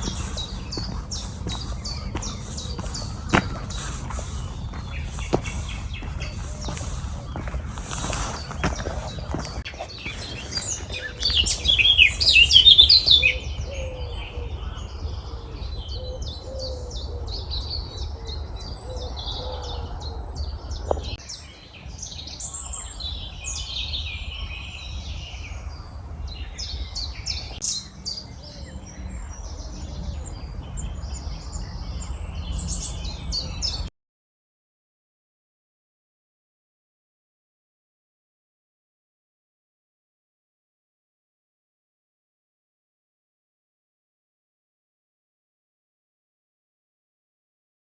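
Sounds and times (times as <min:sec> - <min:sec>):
birds singing and chirping: 0:00.0 - 0:33.9.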